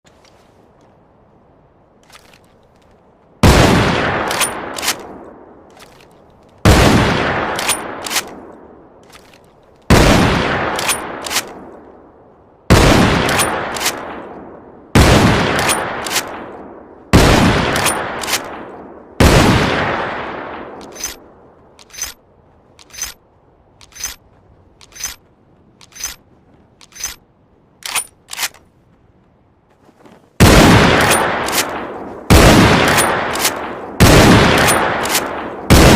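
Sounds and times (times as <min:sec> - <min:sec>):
rifle shots echoing: 0:03.4 - 0:05.5, 0:06.6 - 0:08.5, 0:09.9 - 0:11.8, 0:12.7 - 0:21.3, 0:30.4 - 0:35.9
rifle lever clicks: 0:04.3 - 0:05.1, 0:07.6 - 0:08.4, 0:23.8 - 0:24.2, 0:24.8 - 0:25.2, 0:25.8 - 0:26.2, 0:26.8 - 0:27.2, 0:27.8 - 0:28.7
metallic clicks: 0:20.8 - 0:21.2, 0:21.8 - 0:23.2, 0:23.8 - 0:25.2, 0:25.8 - 0:27.2, 0:27.8 - 0:28.7.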